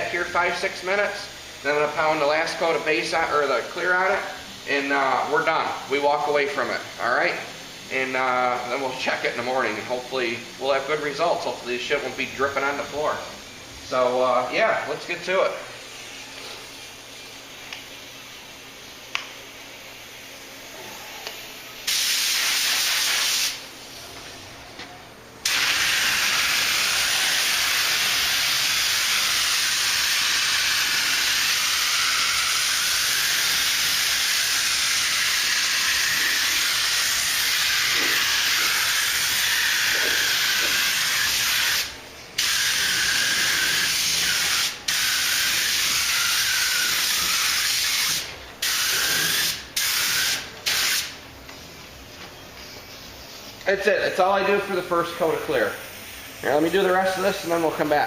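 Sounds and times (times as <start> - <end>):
paint spray gun hissing: 1.6 - 11.1, 15.8 - 20.5, 21.2 - 24.0, 25.4 - 51.2, 54.4 - 58.0.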